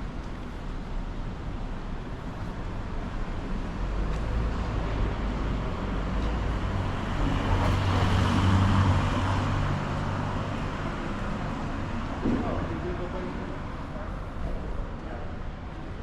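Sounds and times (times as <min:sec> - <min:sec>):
low traffic rumble: 0:00.0 - 0:16.0
vehicle passing close by: 0:06.7 - 0:10.1.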